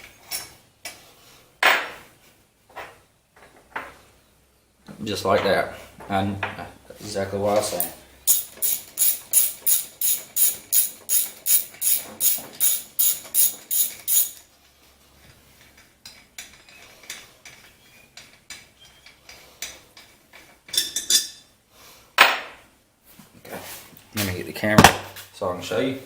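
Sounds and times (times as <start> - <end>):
faint tool handling clicks: 7.7 - 14.4
tool clatter: 7.7 - 14.4
ratchet wrench clicking: 7.8 - 14.4.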